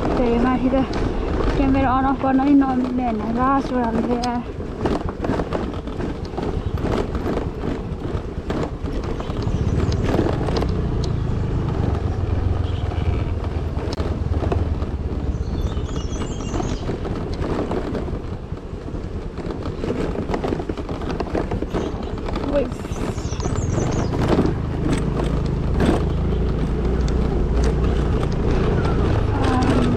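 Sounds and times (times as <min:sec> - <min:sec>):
knocks and rattles: 0:00.0 - 0:29.9
scooter engine running: 0:00.0 - 0:29.9.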